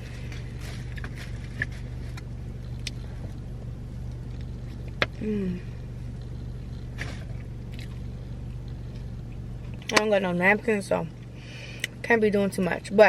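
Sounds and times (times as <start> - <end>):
car engine idling: 0.0 - 13.0
person humming: 5.2 - 5.8.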